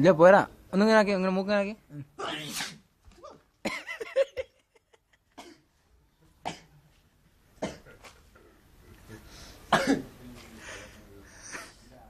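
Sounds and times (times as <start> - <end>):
person coughing and sneezing: 3.6 - 4.2, 5.4 - 5.7, 6.4 - 6.7, 7.6 - 8.0, 9.7 - 10.1.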